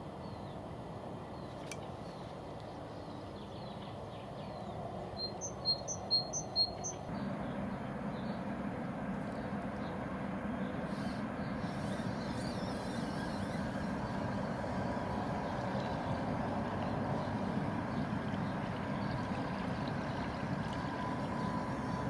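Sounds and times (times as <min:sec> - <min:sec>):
distant engine rumbling: 0:07.1 - 0:22.0.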